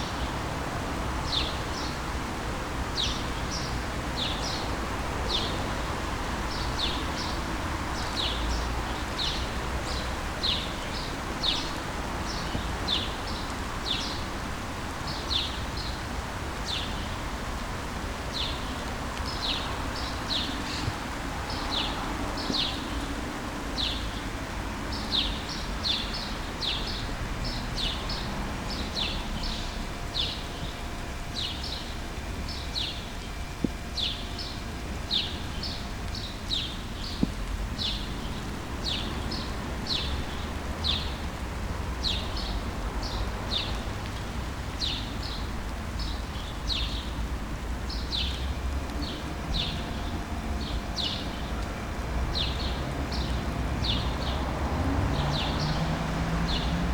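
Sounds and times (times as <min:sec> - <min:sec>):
background traffic rumble: 0:00.0 - 0:56.9
birds chirping: 0:24.9 - 0:41.3, 0:47.9 - 0:56.9.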